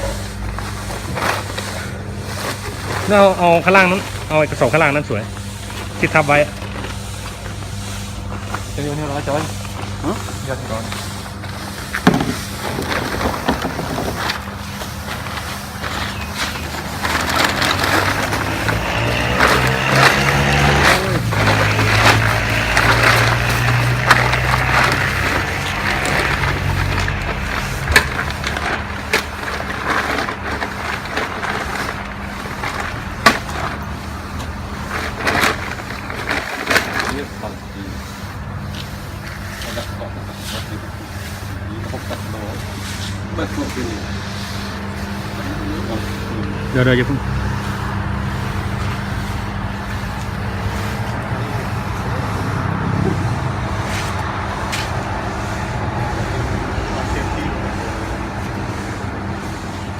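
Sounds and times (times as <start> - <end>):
feed mixer humming: 5.2 - 39.6.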